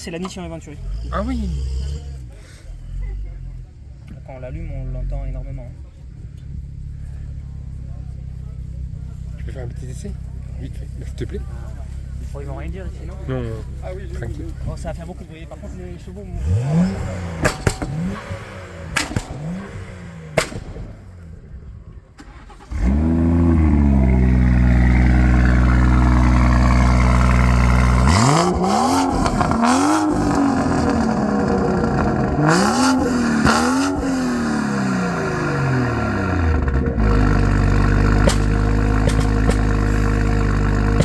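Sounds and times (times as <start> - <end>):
car engine starting and revving: 0.0 - 41.0
sharp clicks: 17.4 - 21.3.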